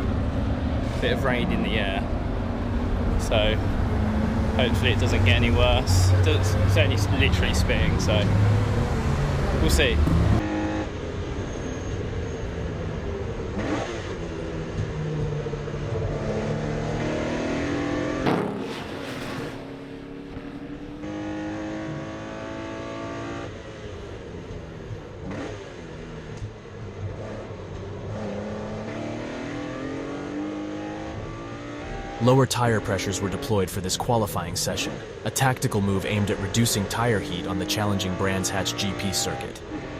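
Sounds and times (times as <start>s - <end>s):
race car engine accelerating: 0.0s - 39.9s
loud rushing burst: 18.2s - 21.2s.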